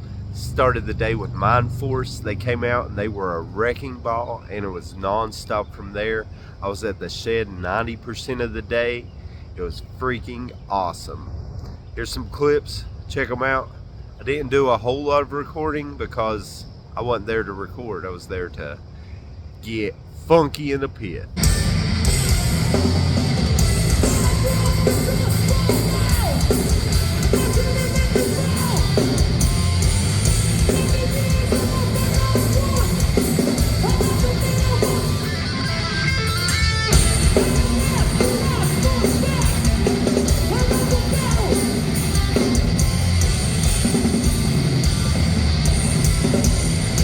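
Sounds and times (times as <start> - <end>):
distorted guitars: 0.0 - 4.0, 21.4 - 47.0
pounding drum kit: 21.4 - 35.5, 36.2 - 47.0
yelled vocals: 21.4 - 47.0.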